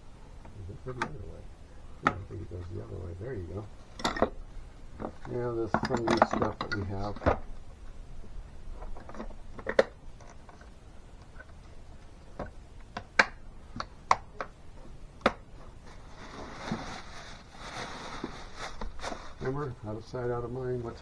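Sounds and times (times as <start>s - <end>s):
rustling: 14.7s - 21.0s.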